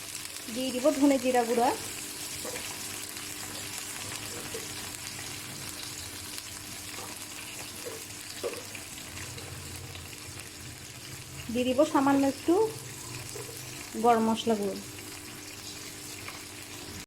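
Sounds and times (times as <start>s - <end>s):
masala sizzling in oil: 0.0s - 17.0s.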